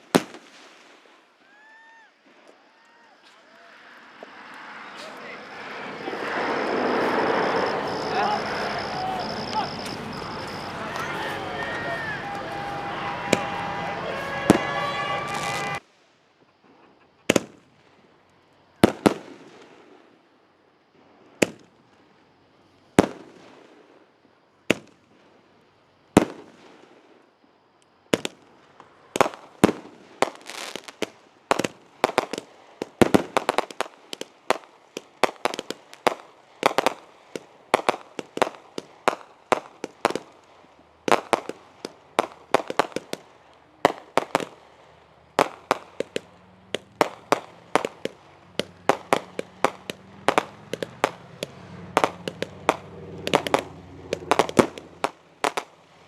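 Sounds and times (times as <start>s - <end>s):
fireworks bangs echoing: 0.0s - 1.2s, 4.2s - 15.9s, 17.3s - 17.9s, 18.8s - 20.0s, 21.4s - 21.7s, 23.0s - 23.8s, 28.1s - 56.0s.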